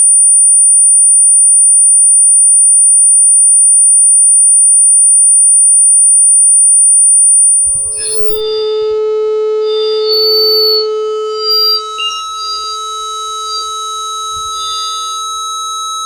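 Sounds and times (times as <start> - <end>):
microphone feedback howl: 0.0 - 16.0.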